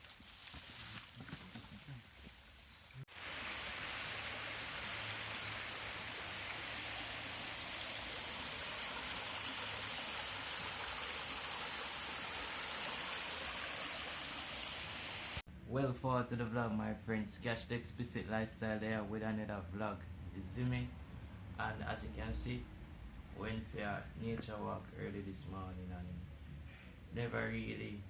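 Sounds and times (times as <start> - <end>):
faint outdoor sounds: 0.0 - 28.0
stream flowing: 0.3 - 15.4.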